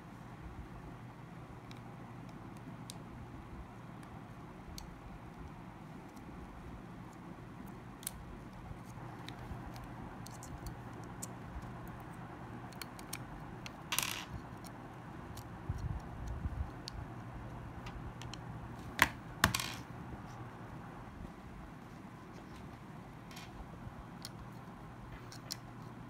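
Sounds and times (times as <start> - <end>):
faint low hum: 0.0 - 26.0
small clicks and taps of parts: 1.6 - 3.1, 7.0 - 19.8, 24.1 - 26.0.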